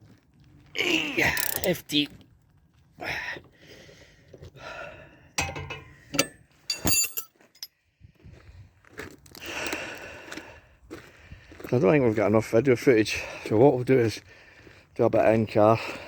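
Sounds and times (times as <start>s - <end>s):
metallic clinks and knocks: 5.4s - 7.7s.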